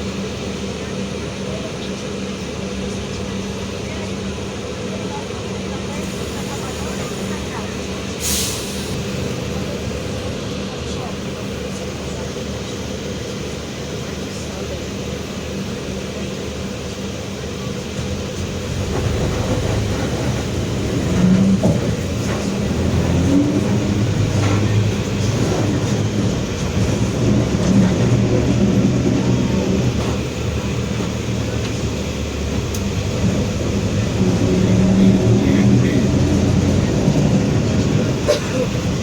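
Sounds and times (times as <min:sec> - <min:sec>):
bus diesel engine under load: 0:00.0 - 0:39.0
drive axle drone: 0:18.2 - 0:39.0.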